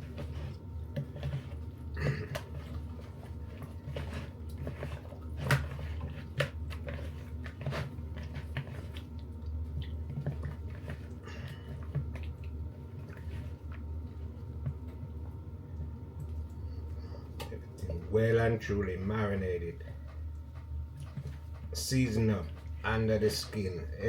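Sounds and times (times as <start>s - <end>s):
wet squishing of hands: 0.0s - 18.0s
steady low hum: 0.0s - 24.0s.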